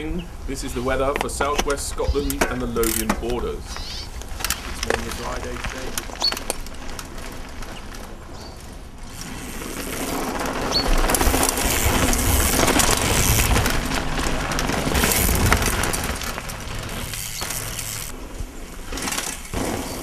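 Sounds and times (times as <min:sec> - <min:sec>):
bike rattling: 0:00.0 - 0:20.0
tyres crunching over stones: 0:00.8 - 0:20.0
low rumble: 0:11.0 - 0:19.0.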